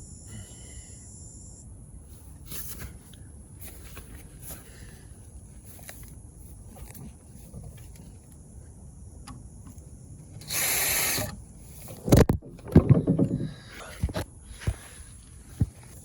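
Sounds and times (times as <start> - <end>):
power drill running: 10.4 - 11.3
tools and wood knocking: 12.1 - 13.6.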